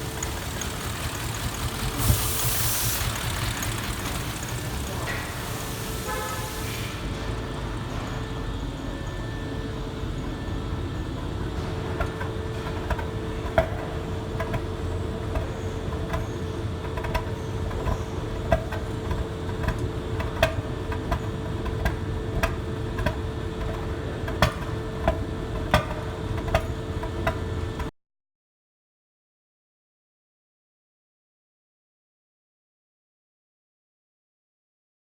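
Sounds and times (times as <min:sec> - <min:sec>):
engine misfire ticks: 0:00.0 - 0:06.5, 0:10.2 - 0:27.9
car engine idling: 0:00.0 - 0:27.8.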